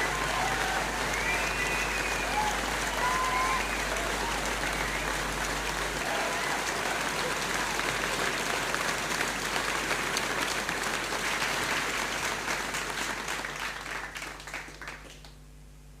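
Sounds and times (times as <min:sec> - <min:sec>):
crowd applause: 0:00.0 - 0:15.3.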